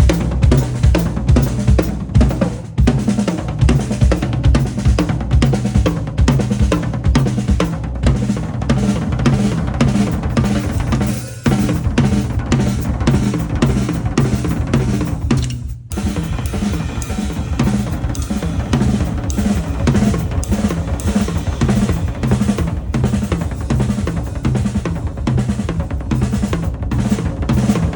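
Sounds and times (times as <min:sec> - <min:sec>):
drum kit playing fast rhythm: 0:00.0 - 0:27.9
repeating low bass line: 0:15.9 - 0:27.9.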